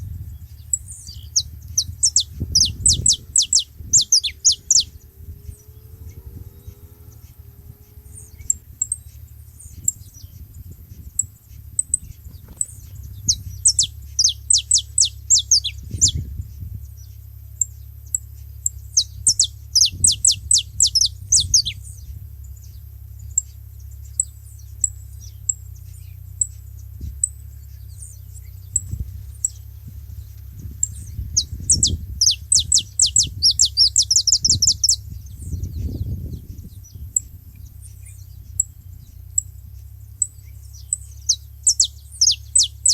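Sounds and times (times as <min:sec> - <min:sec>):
finches chip notes: 0:00.0 - 0:10.4, 0:11.2 - 0:16.2, 0:30.3 - 0:36.0, 0:40.2 - 0:42.9
rapid descending bird notes: 0:00.4 - 0:10.3.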